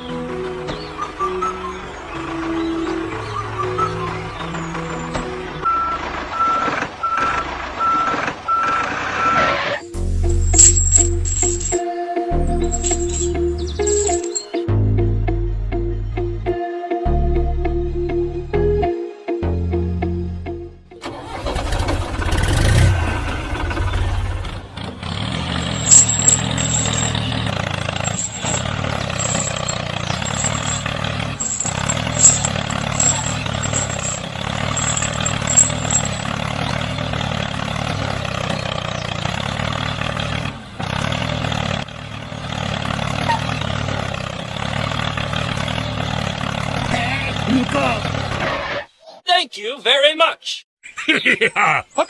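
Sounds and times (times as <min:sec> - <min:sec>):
small engine running: 0:21.4 - 0:48.4.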